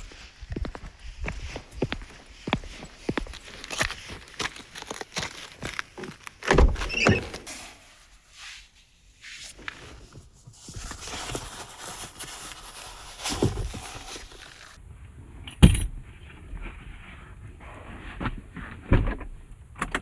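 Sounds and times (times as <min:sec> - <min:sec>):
shuffling and handling noises: 0:08.3 - 0:14.8.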